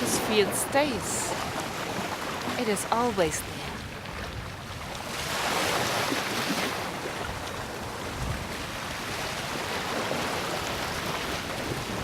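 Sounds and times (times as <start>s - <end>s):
ocean wave rushing: 0.0s - 3.8s.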